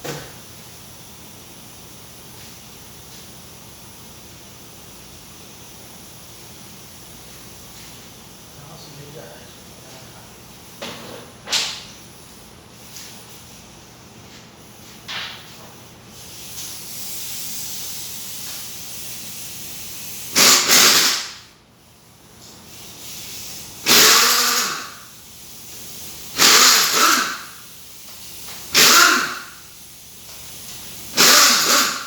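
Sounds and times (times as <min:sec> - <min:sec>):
compressed air blow gun hissing: 0:16.1 - 0:32.0.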